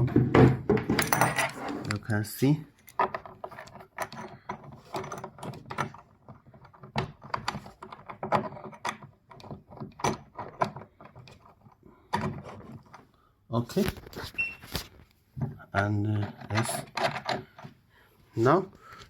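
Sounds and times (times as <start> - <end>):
clicks and knocks of hard parts: 2.8 - 13.1, 14.7 - 17.8.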